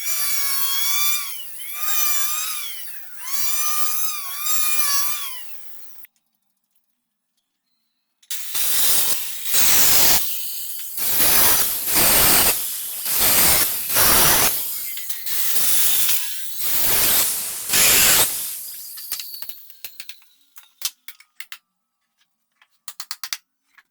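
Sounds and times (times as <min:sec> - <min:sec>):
hand tool rasping wood: 0:00.0 - 0:05.8, 0:08.3 - 0:19.7.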